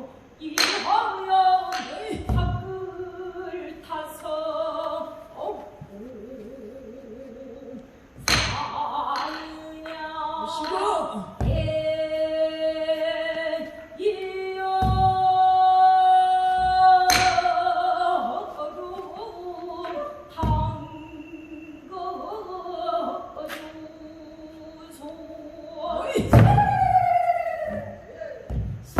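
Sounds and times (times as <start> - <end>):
woman singing with vibrato: 0.0 - 28.9.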